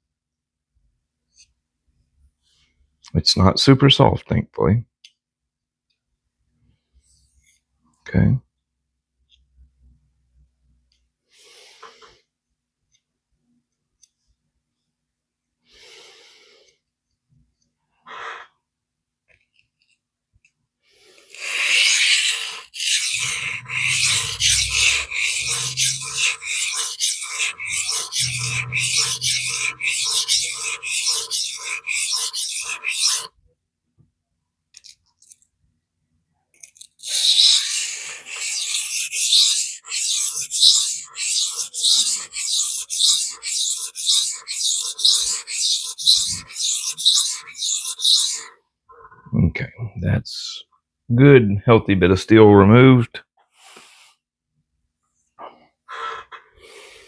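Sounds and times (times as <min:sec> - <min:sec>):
knife scraping on sharpening stone: 0:21.7 - 0:33.3, 0:36.7 - 0:48.5.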